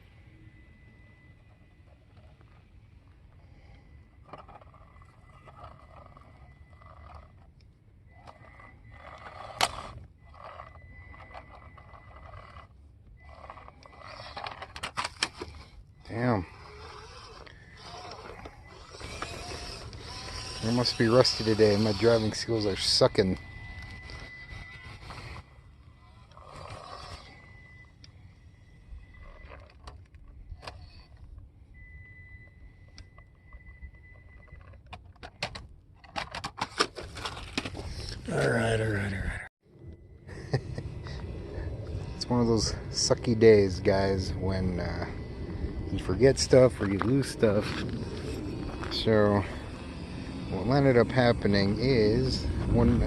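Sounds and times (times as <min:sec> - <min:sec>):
toy car motor whirring: 0:03.4 - 0:31.3, 0:46.0 - 0:53.0.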